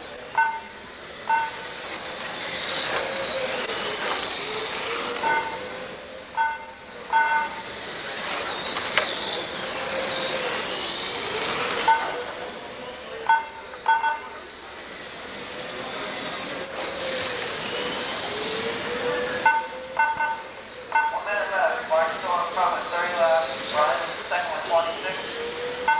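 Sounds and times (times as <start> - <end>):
rc car motors whining: 0.0 - 25.9
short electronic beeps: 0.4 - 1.6, 5.2 - 5.7, 6.4 - 7.6, 11.8 - 12.2, 13.3 - 14.3, 19.4 - 21.3.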